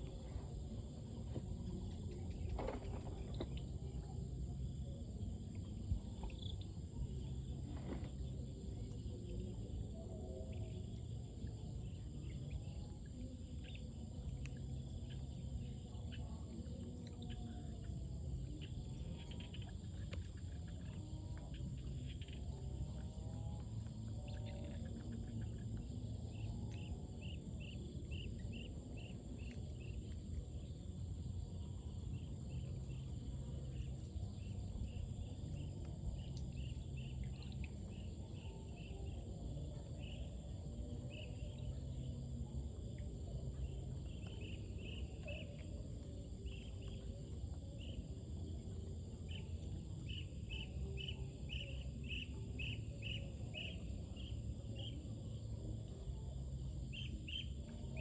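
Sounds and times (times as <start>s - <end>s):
insects chirping: 0.0s - 58.0s.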